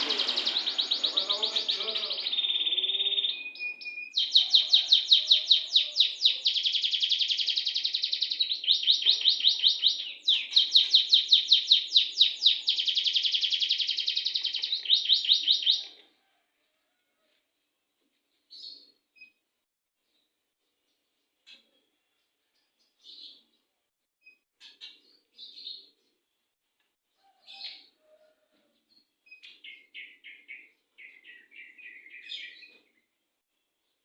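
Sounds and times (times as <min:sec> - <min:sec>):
canary singing trills: 0:00.0 - 0:16.0, 0:29.3 - 0:32.8
faint bird chirp: 0:27.2 - 0:33.1.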